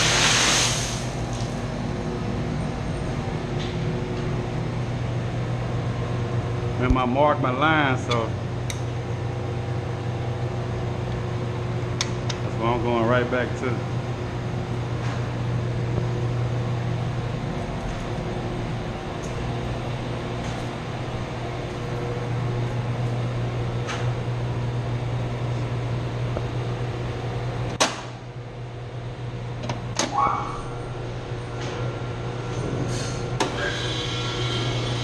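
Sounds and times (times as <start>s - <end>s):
pump motor humming: 0.0s - 1.7s, 32.0s - 35.0s.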